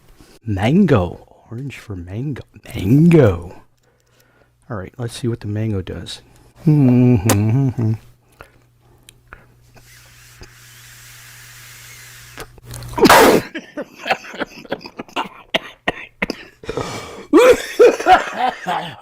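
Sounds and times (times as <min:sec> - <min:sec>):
drawing on a vape: 0:09.7 - 0:12.6
person coughing: 0:13.0 - 0:19.0.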